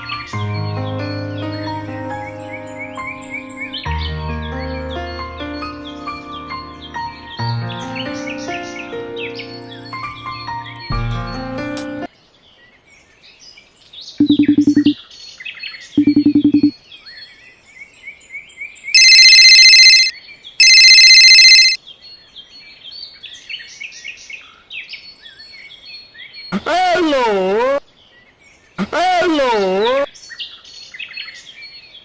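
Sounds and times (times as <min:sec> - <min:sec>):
birds chirping: 0:14.1 - 0:15.1, 0:15.9 - 0:16.8, 0:28.8 - 0:30.4
loud steady high tones: 0:16.0 - 0:16.7, 0:19.0 - 0:21.8, 0:26.6 - 0:27.8, 0:28.8 - 0:30.1.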